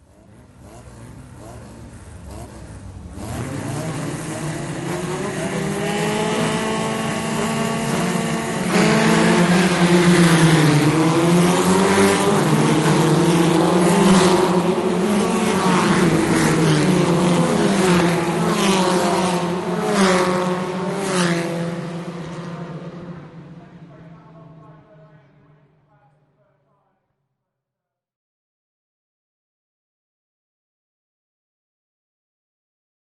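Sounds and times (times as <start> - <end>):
race car engines revving: 0.0 - 26.4.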